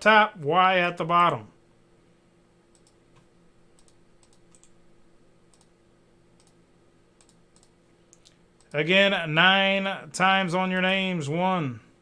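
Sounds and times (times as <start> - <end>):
low room hum: 0.0 - 12.0
faint clicks: 2.7 - 4.8, 7.2 - 8.8.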